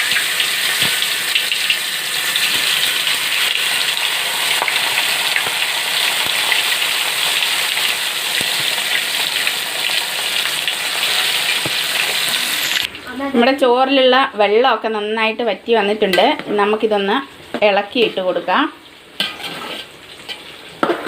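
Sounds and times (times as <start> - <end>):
chicken sizzling in oil: 0.0 - 12.9.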